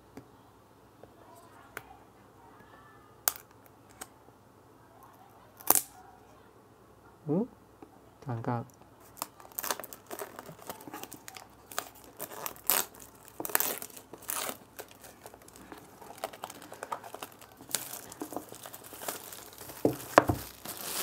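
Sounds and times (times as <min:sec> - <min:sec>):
packaging crinkling and tearing: 0:09.0 - 0:21.0.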